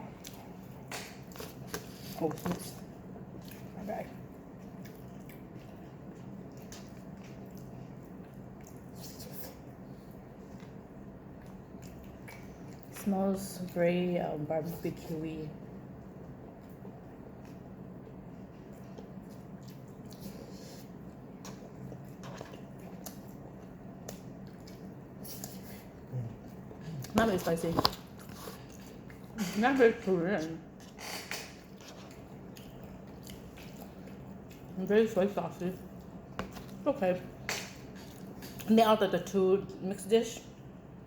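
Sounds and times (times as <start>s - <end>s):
wet squishy eating sounds: 0.0s - 14.4s, 15.6s - 38.8s
steady low hum: 0.0s - 41.0s
person chewing: 3.3s - 9.7s, 16.6s - 27.2s, 30.8s - 34.8s, 37.5s - 38.7s.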